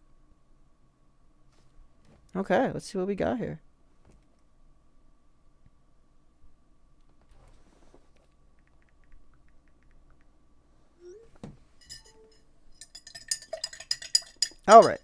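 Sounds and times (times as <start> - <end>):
faint small clicks: 8.2 - 10.4
light clinking: 11.8 - 15.0.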